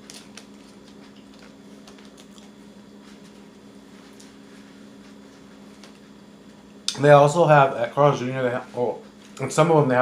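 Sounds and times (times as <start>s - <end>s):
people eating and handling food: 0.0s - 6.2s.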